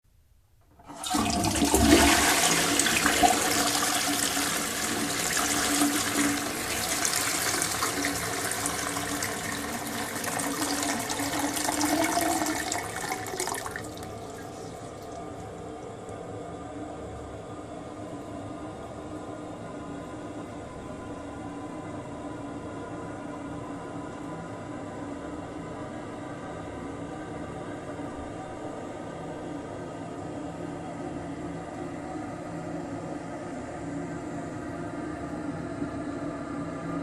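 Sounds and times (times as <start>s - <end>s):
toilet flushing: 0.8s - 16.1s.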